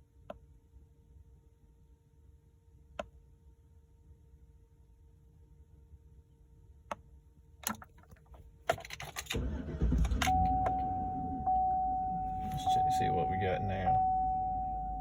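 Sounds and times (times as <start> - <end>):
truck engine low rumble: 9.4 - 15.0
clicks: 10.0 - 11.0
steady electronic tone: 10.3 - 15.0.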